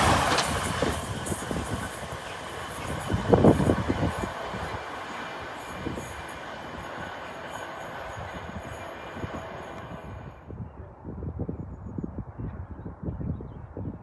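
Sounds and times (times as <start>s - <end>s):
loud burst: 0.0s - 6.5s
high wheel squeal: 0.0s - 10.4s
train wheels rumbling: 0.0s - 10.5s.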